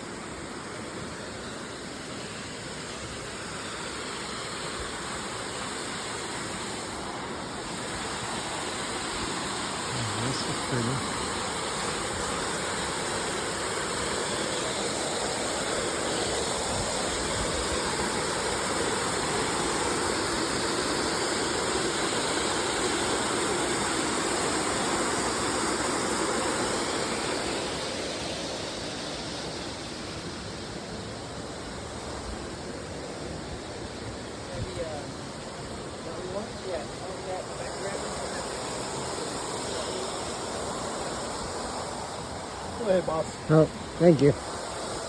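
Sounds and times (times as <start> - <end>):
waterfall roaring: 0.0 - 31.2.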